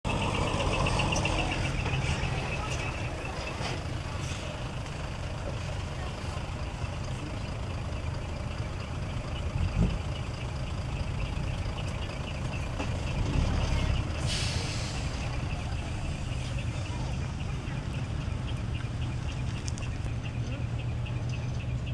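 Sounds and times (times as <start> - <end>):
truck diesel engine running: 0.0 - 21.9
air hiss: 14.2 - 15.4.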